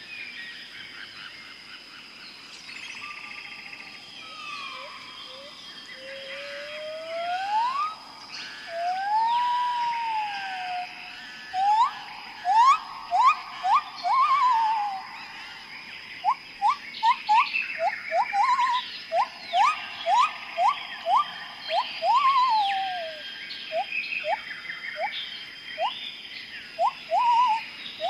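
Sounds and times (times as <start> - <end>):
high insect drone: 0.0 - 28.0
loud whistled calls: 4.2 - 15.4, 16.2 - 26.0, 26.8 - 27.7
quick upswept whistles: 4.5 - 8.0, 11.5 - 15.1, 16.2 - 25.1, 25.8 - 26.0, 26.8 - 27.6
birds calling: 10.8 - 28.0.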